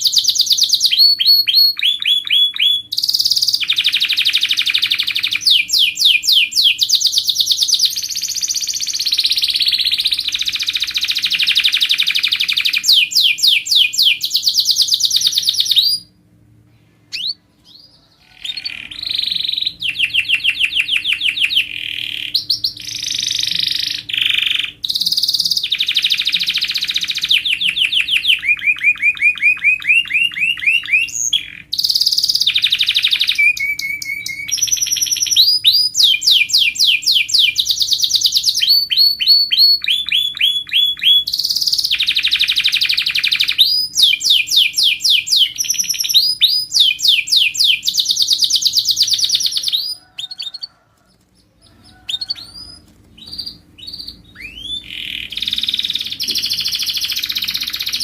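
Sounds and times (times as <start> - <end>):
canary singing trills: 0.0 - 58.0.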